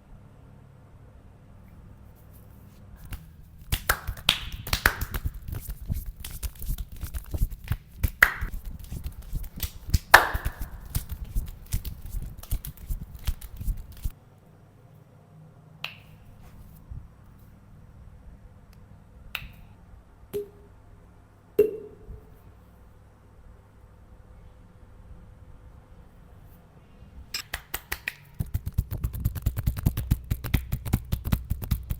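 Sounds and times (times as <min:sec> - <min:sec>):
finger snaps: 0:03.0 - 0:14.1, 0:15.8 - 0:16.2, 0:18.7 - 0:19.7, 0:27.4 - 0:28.7
hands slapping and patting skin: 0:03.0 - 0:14.2, 0:27.4 - 0:31.9.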